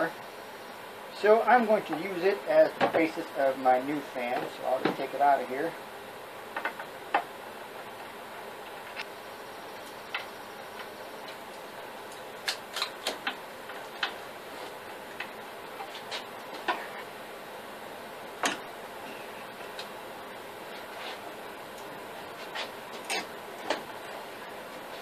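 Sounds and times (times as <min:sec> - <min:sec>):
steady low hiss: 0:00.0 - 0:25.0.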